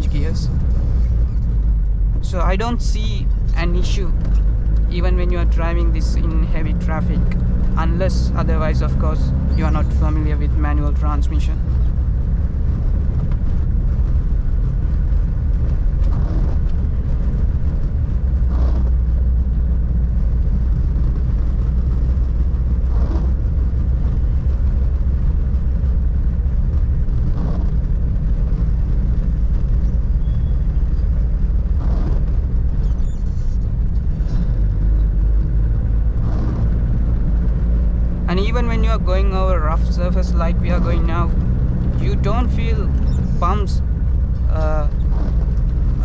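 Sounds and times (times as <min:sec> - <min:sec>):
diesel engine running: 0:00.0 - 0:46.0
road rumble: 0:00.0 - 0:46.0.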